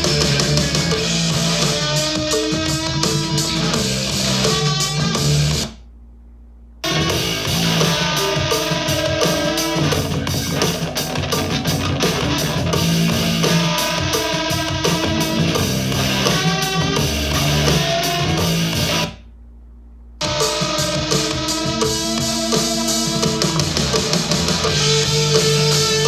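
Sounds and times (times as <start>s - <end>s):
guitar and drums music: 0.0s - 5.8s, 6.8s - 19.2s, 20.2s - 26.0s
low hum: 0.0s - 13.5s, 15.0s - 20.4s.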